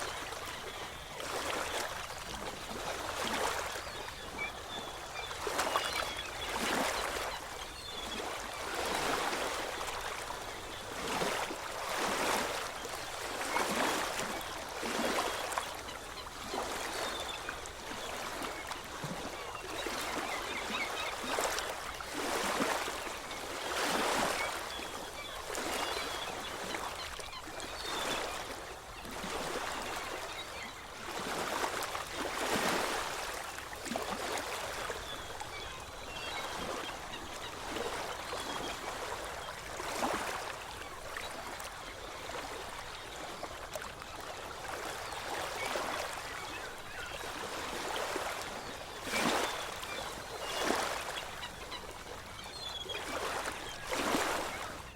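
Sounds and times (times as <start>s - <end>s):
ocean waves breaking: 0.0s - 15.9s, 43.7s - 54.9s.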